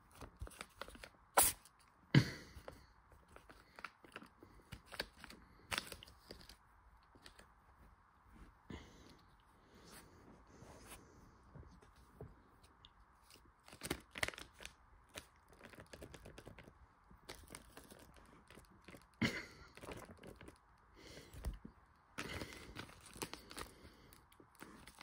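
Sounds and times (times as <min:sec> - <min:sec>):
wrapper crinkling: 0:13.2 - 0:19.2, 0:22.2 - 0:25.0.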